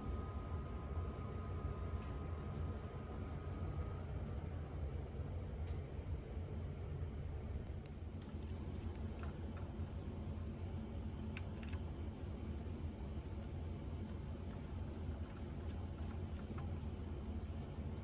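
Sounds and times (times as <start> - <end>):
steady low hum: 0.0 - 18.0
light clicks and scratches: 7.6 - 9.8, 10.4 - 18.0.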